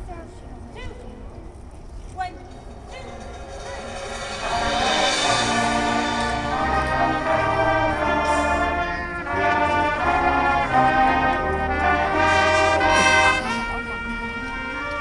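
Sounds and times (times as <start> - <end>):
brass section playing chords: 2.5 - 15.0.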